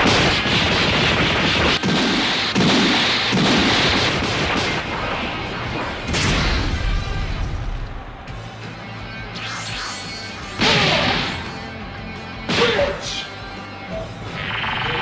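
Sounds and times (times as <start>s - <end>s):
energy blasts and impacts: 0.0s - 7.7s, 9.3s - 11.7s
music: 0.1s - 15.0s.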